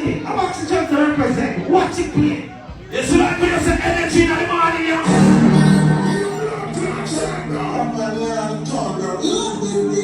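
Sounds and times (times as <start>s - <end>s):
song with faint voice: 4.4s - 10.0s.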